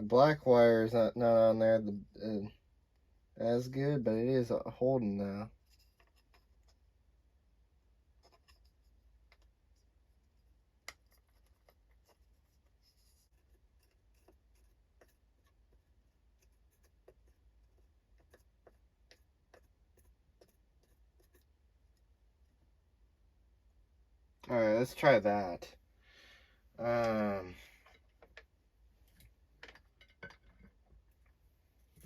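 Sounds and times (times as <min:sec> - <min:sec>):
clicks of small parts handled: 0:29.1 - 0:30.8.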